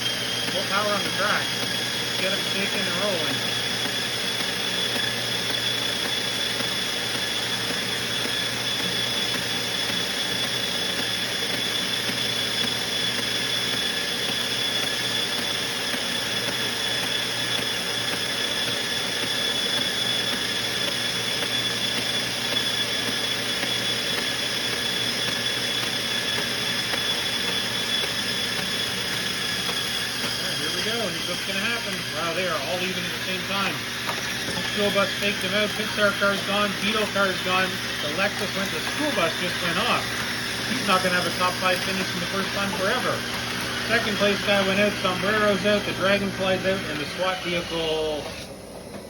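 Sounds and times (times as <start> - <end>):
steady high-pitched tone: 0.0 - 4.4, 24.1 - 48.4
treadmill motor and belt humming: 0.0 - 49.0.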